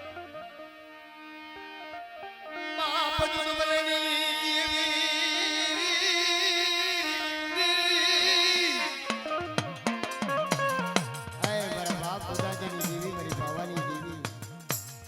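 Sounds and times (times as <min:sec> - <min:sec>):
sharp drum strokes: 0:09.0 - 0:15.0.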